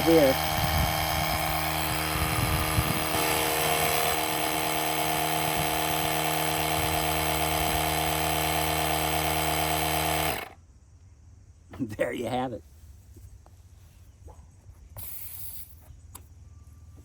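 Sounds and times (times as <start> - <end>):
tire compressor humming: 0.0 - 10.6.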